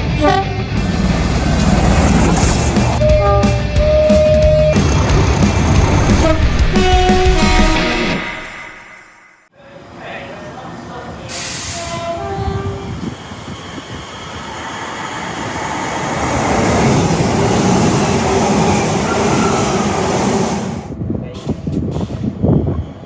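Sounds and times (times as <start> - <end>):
train passing at speed: 0.0 - 23.0
short train horn notes: 0.1 - 0.7, 3.0 - 4.4, 6.1 - 9.4, 11.7 - 12.9.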